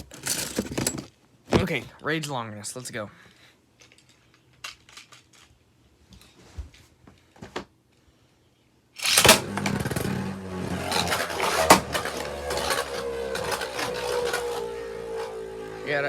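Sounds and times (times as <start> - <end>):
spinning top launch: 9.0 - 15.7
spinning top whirring and scraping: 9.0 - 16.0.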